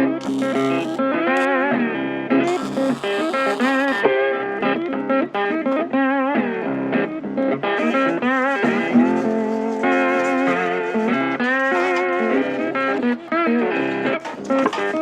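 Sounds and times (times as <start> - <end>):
electric blues guitar: 0.0 - 1.8, 2.4 - 9.6.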